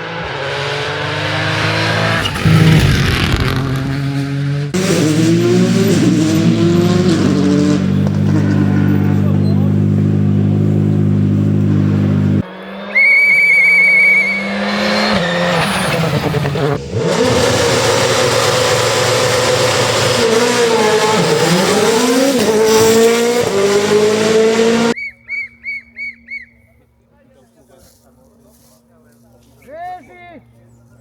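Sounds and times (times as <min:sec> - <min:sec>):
rally car engine high revs: 0:00.0 - 0:25.0
rally car passing: 0:00.0 - 0:25.0
brief high whistle: 0:12.8 - 0:15.3.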